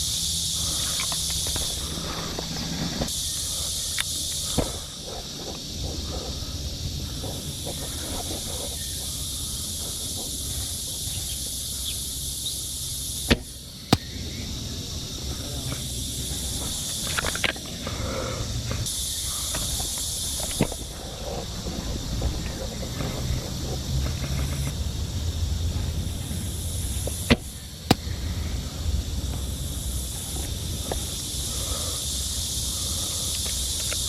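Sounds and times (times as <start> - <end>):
steady high-pitched hiss: 0.0 - 34.0
airsoft gun cracks: 13.3 - 14.2, 27.3 - 28.1.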